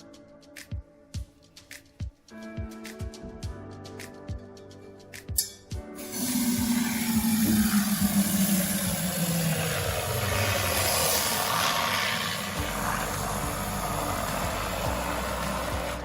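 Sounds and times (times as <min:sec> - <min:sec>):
aerosol can hissing: 0:06.0 - 0:16.0.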